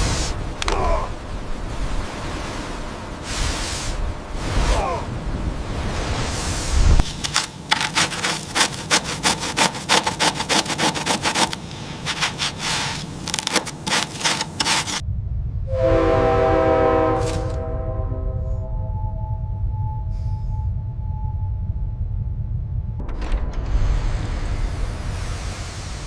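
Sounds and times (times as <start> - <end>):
low rumble: 0.0 - 7.2, 15.0 - 26.0
rapid scraping and rasping clicks: 7.0 - 15.0.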